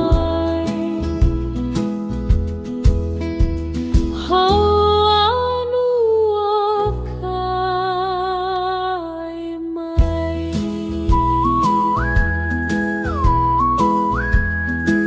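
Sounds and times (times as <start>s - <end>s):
ukulele music: 0.0s - 5.8s, 10.0s - 15.0s.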